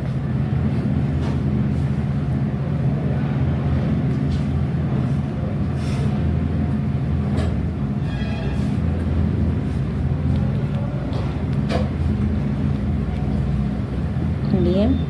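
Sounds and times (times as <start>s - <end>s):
steady low rumble: 8.9s - 14.9s.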